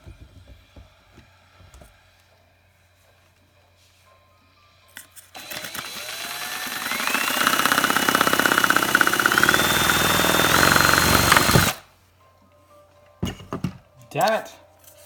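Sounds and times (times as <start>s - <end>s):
electric drill motor whine: 5.4s - 11.8s.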